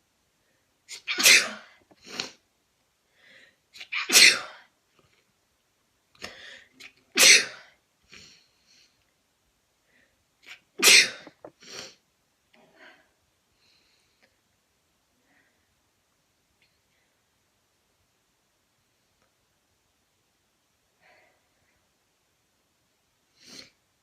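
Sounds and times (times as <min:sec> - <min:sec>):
person sneezing: 0:00.9 - 0:02.4, 0:03.8 - 0:04.7, 0:06.2 - 0:07.7, 0:10.5 - 0:11.5.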